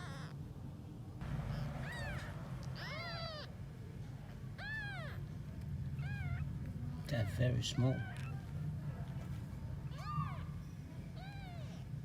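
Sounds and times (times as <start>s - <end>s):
kittens mewing: 1.4s - 3.5s.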